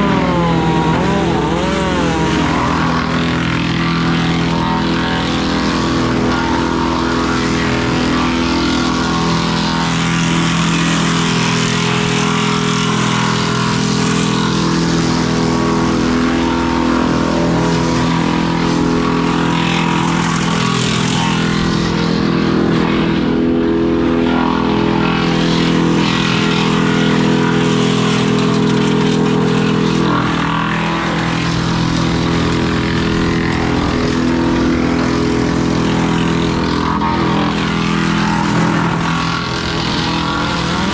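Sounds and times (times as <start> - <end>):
loud engine running steadily: 0.0 - 40.9.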